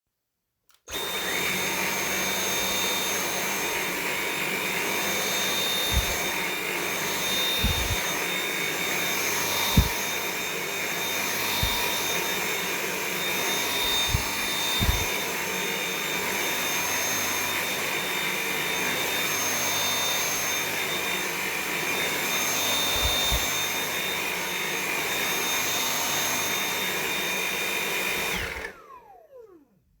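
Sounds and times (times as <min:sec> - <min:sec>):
vacuum cleaner motor whining: 0:00.8 - 0:29.8
low thumps: 0:05.9 - 0:06.3, 0:07.6 - 0:08.1, 0:09.7 - 0:10.0, 0:13.8 - 0:15.1
motor winding down: 0:07.4 - 0:08.1.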